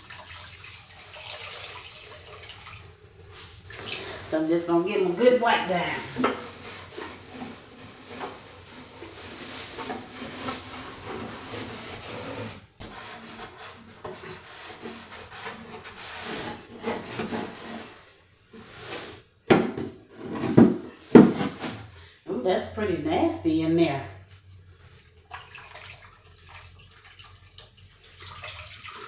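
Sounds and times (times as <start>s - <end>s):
cloth rubbing on wood: 3.3s - 18.0s.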